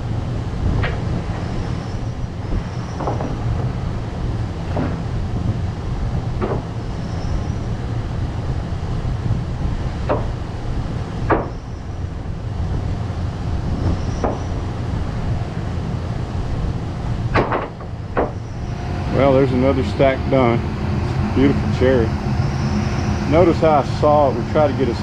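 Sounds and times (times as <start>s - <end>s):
sawmill engine rumbling: 0.0s - 25.0s
wooden boards knocking on stack: 6.4s - 6.7s, 11.3s - 11.6s, 17.4s - 18.4s.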